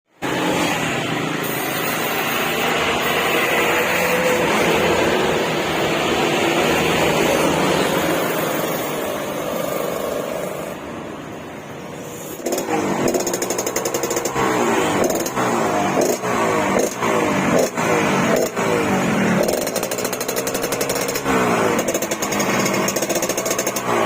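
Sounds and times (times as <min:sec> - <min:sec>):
two-stroke motorcycle engine revving: 0:12.3 - 0:24.0.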